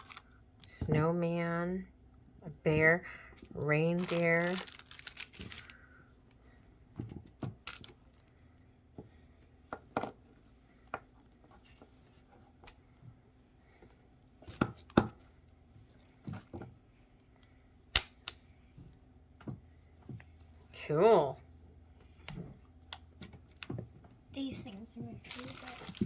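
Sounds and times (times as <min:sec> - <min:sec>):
plastic toys clicking and tapping: 0:25.2 - 0:26.0.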